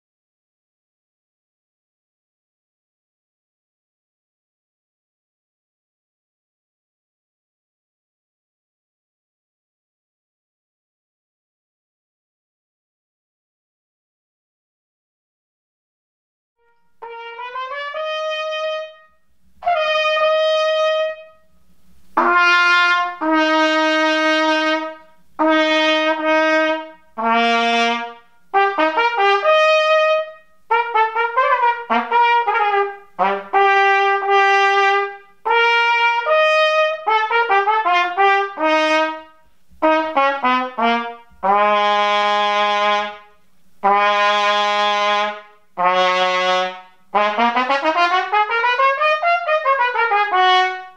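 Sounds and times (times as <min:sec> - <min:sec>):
trumpet playing: 0:16.6 - 0:21.5, 0:22.2 - 0:50.9.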